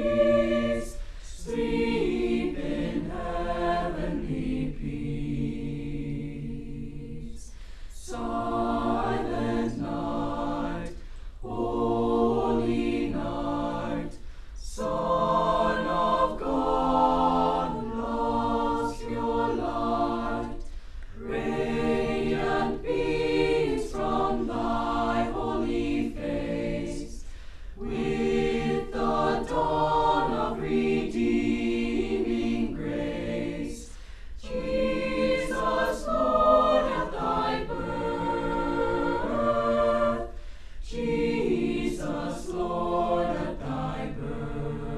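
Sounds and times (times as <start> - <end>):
choir singing: 0.0 - 44.9.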